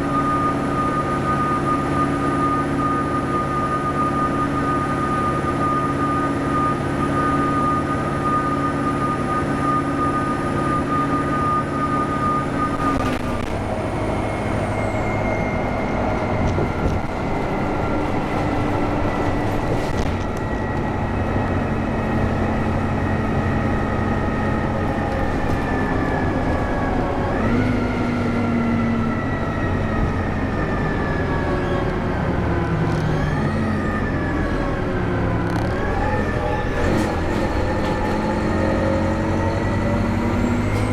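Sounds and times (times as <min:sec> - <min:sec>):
bus diesel engine with turbo whistle: 0:00.0 - 0:40.9
road noise rumble: 0:00.0 - 0:40.9.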